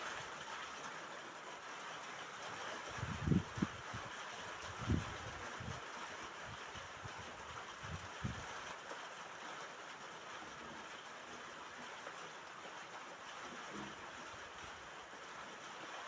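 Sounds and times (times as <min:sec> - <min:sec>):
rain on a roof: 0:00.0 - 0:16.0.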